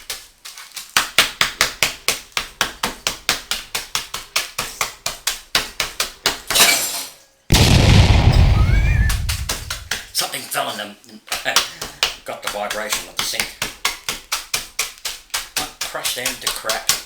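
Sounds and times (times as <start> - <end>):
biscuits in bag being pounded: 0.0 - 6.5, 7.5 - 10.1, 11.4 - 17.0
loud rough rumbling: 7.5 - 10.0.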